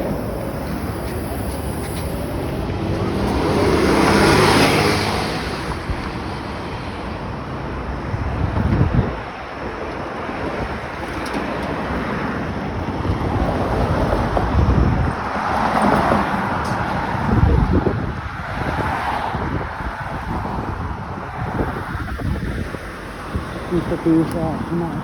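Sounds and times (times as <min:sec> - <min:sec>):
street traffic rushing: 0:00.0 - 0:25.0
wind buffeting microphone: 0:00.0 - 0:25.0.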